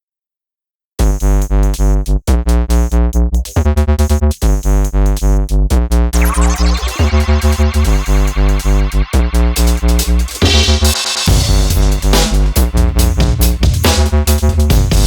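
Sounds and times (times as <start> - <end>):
electronic music with heavy bass: 6.2 - 15.0.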